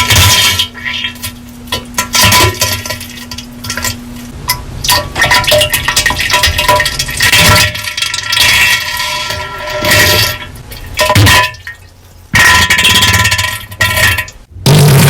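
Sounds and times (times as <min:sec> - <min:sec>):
distorted diarrhea sound effect: 0:14.5 - 0:15.0.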